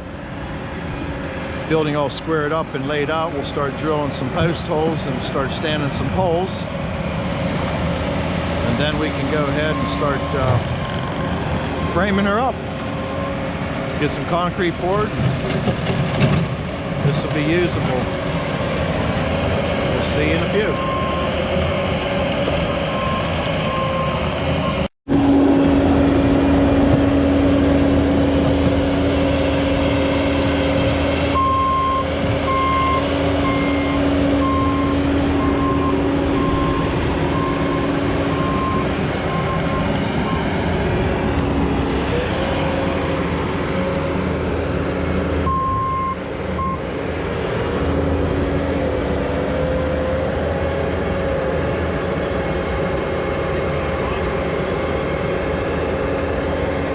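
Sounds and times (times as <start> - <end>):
heavy vehicle engine running: 0.0 - 56.9
backup alarm beeping: 31.4 - 39.9, 45.5 - 46.8.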